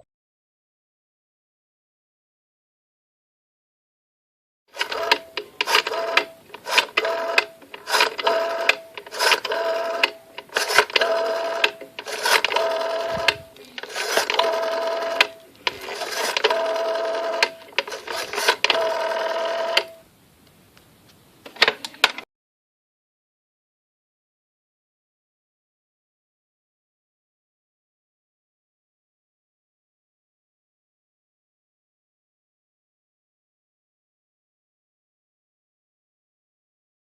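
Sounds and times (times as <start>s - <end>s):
rotary phone dial whirring: 4.7s - 20.0s
telephone handset clicks: 4.8s - 20.0s.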